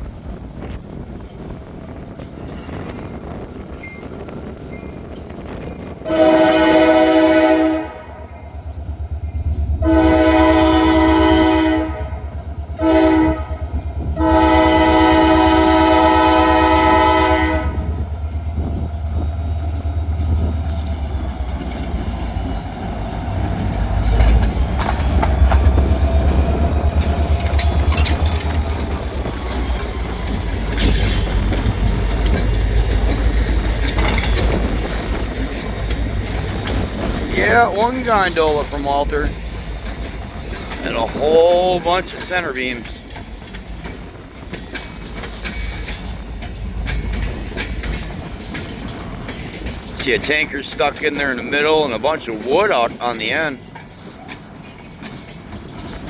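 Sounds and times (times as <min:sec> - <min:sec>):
train rumbling past: 0:00.0 - 0:56.0
locomotive air horn blasts: 0:06.0 - 0:08.5, 0:09.8 - 0:18.0
wheels clicking over rail joints: 0:08.6 - 0:56.0.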